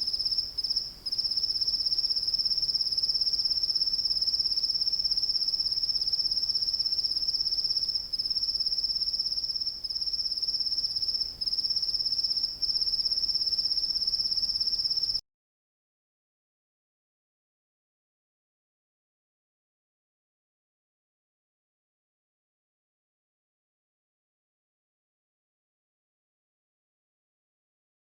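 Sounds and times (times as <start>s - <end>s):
cricket trilling: 0.0s - 15.2s.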